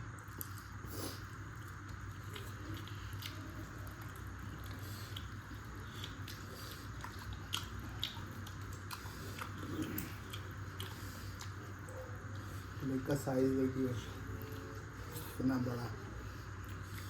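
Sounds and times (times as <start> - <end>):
steady low hum: 0.0 - 17.0
chewing and wet mouth smacks: 0.1 - 12.8.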